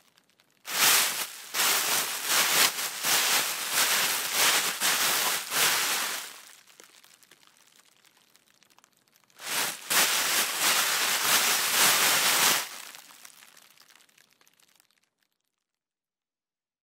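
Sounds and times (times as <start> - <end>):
plastic bag rustling: 0.7 - 7.4, 9.4 - 13.5.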